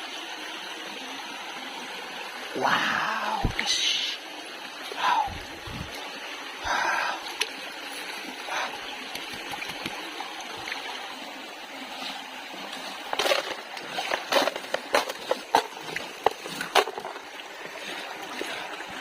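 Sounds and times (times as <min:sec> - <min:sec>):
flowing stream water: 0:00.0 - 0:19.0
water sloshing in a pan: 0:11.9 - 0:19.0.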